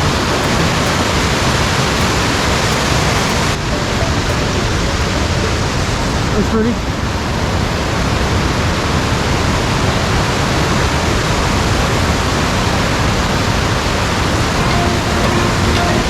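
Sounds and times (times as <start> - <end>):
waterfall rushing: 0.0 - 8.8, 13.0 - 16.0.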